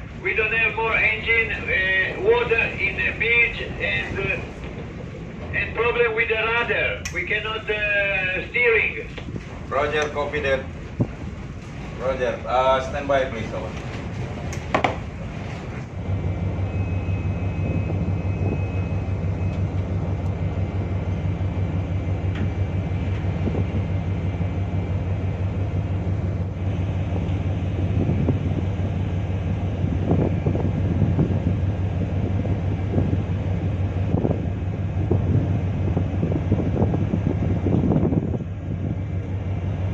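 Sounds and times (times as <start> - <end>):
ship engine humming: 0.0 - 39.9
wind noise on microphone: 8.2 - 12.0, 16.8 - 19.5, 22.3 - 24.2, 26.0 - 39.9.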